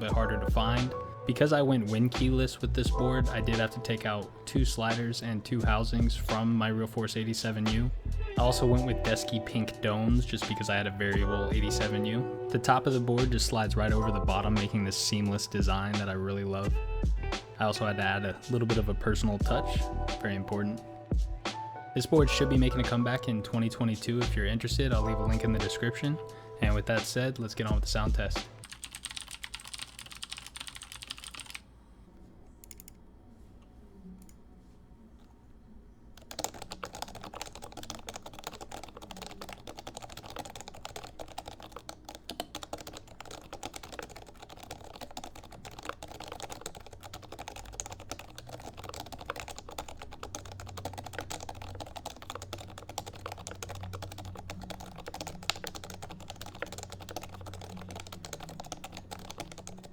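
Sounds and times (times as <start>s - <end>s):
keyboard typing: 7.7s - 16.1s, 28.4s - 31.6s, 32.6s - 33.0s, 36.2s - 59.9s.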